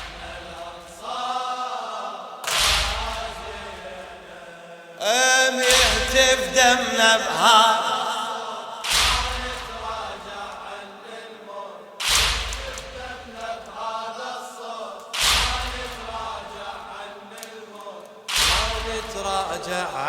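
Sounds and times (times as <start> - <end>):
unison chest-beating strikes: 0.0 - 1.1, 2.4 - 4.4, 5.6 - 7.3, 8.8 - 10.8, 12.0 - 13.8, 15.1 - 17.0, 18.3 - 20.0
crowd chanting: 0.0 - 20.0.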